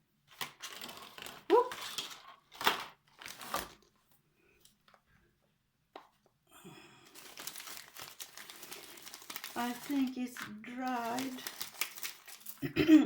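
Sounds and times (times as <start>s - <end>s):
packaging rustling: 0.3s - 5.1s, 7.0s - 12.6s.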